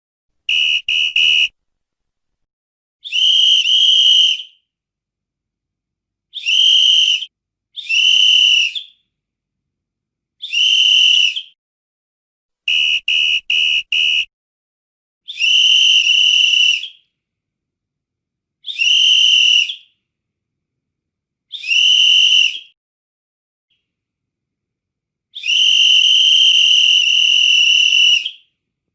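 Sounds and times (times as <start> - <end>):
whistle blasts: 0.5 - 1.6, 3.0 - 4.6, 6.4 - 9.0, 10.4 - 11.6, 12.7 - 14.3, 15.3 - 17.0, 18.7 - 19.9, 21.6 - 22.7, 25.4 - 28.5.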